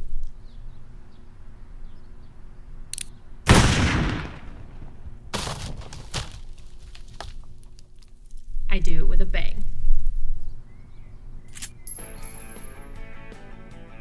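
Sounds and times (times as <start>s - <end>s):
gunshots: 3.5s - 5.0s.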